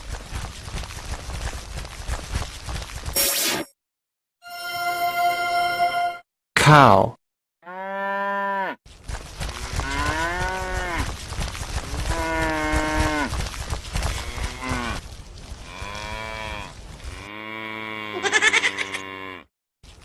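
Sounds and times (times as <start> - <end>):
cattle mooing: 7.6 - 8.8, 15.7 - 19.5.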